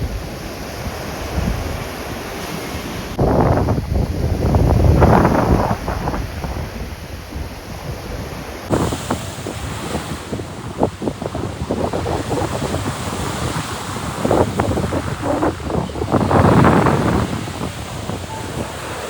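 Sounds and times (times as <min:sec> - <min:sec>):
sea waves washing onto beach: 0:00.0 - 0:19.0
wind buffeting microphone: 0:00.0 - 0:19.0.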